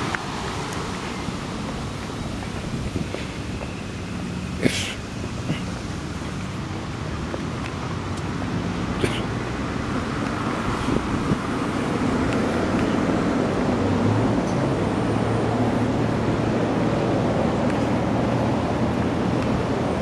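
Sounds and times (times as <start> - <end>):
road traffic noise: 0.0 - 20.0
vehicle engine hum: 0.0 - 20.0.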